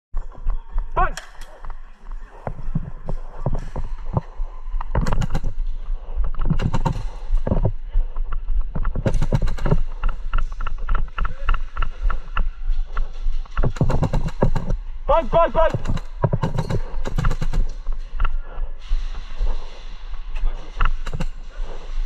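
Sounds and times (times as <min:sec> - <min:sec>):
fast heavy footfalls: 0:02.4 - 0:18.2.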